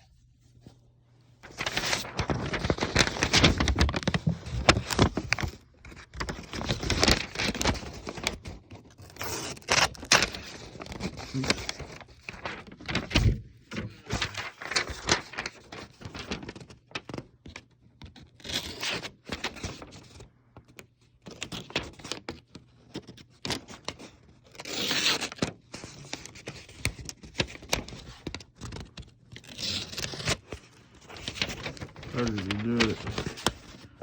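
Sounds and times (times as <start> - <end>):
tearing and crinkling: 1.4 - 13.2, 14.0 - 16.6, 28.6 - 34.0.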